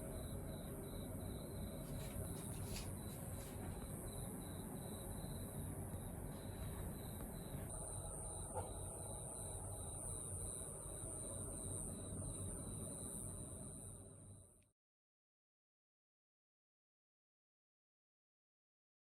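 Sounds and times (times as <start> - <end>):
faint insect chirps: 0.0 - 14.6.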